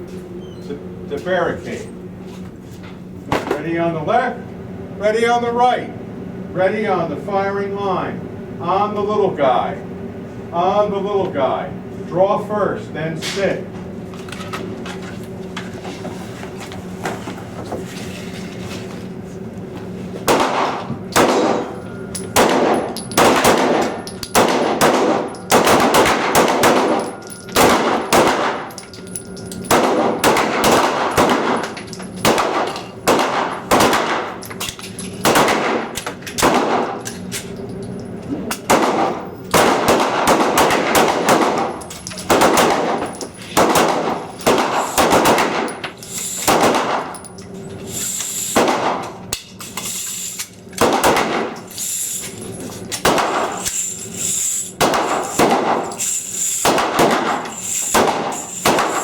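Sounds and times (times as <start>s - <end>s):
pistols firing: 20.2s - 37.0s, 38.6s - 45.8s, 46.4s - 47.2s, 48.5s - 49.2s, 50.8s - 51.6s, 53.0s - 53.8s, 54.8s - 59.0s.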